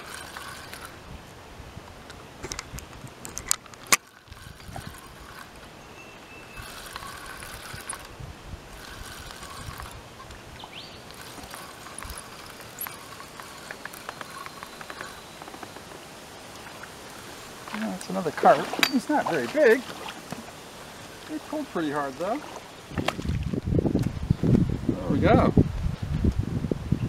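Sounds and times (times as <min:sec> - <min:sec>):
fishing reel winding: 0:00.0 - 0:01.0, 0:03.2 - 0:05.8, 0:06.4 - 0:15.9, 0:16.9 - 0:19.8
water trickling and splashing: 0:00.0 - 0:01.4, 0:02.4 - 0:24.2
sharp clicks: 0:08.8 - 0:15.9.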